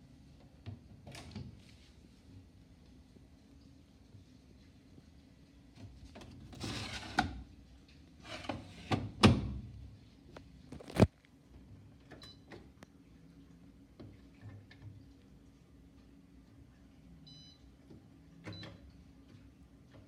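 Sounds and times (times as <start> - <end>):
parts sliding and rubbing: 6.5 - 7.3, 8.2 - 8.9.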